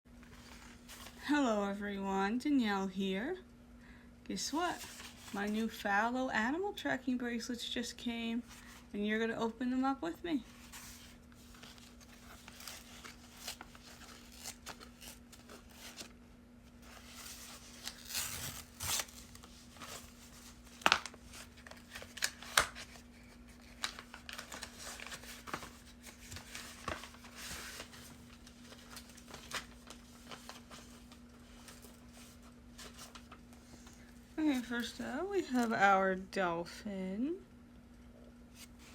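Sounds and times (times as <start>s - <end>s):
faint steady hum: 0.1s - 38.9s
packaging tearing and crinkling: 10.6s - 16.1s, 16.8s - 33.4s.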